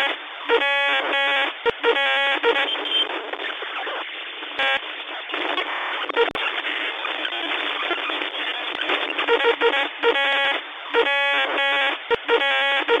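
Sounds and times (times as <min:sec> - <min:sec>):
harsh radio buzzing tones: 0:00.0 - 0:13.0
radio static hiss: 0:00.0 - 0:13.0.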